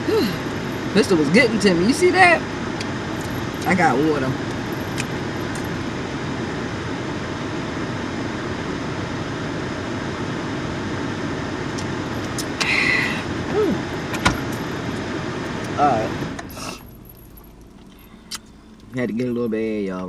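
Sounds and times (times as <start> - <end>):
car air conditioning blowing: 0.0 - 20.0.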